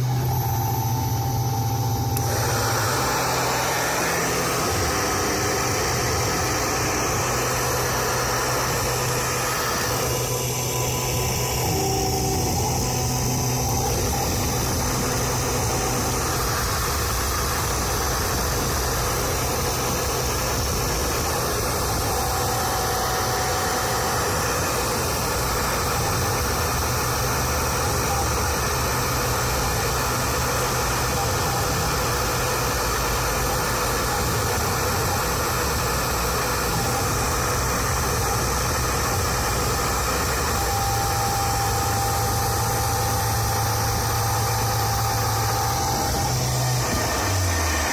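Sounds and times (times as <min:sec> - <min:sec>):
router spindle hum and hiss: 0:00.0 - 0:47.9.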